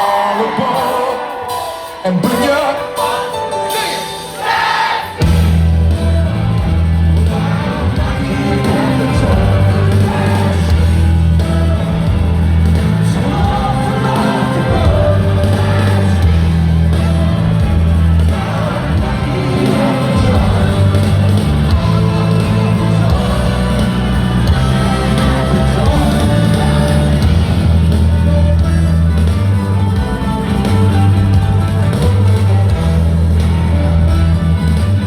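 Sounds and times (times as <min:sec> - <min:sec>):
crowd shouting and whooping: 0:00.0 - 0:35.0
live rock band playing: 0:00.0 - 0:35.0
heavy bass and drum beat: 0:05.2 - 0:35.0
person singing: 0:07.1 - 0:33.1.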